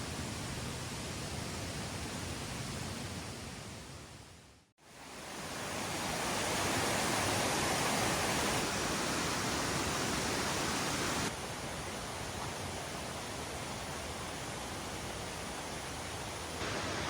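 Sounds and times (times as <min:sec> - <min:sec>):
stream water rushing: 0:04.8 - 0:17.0.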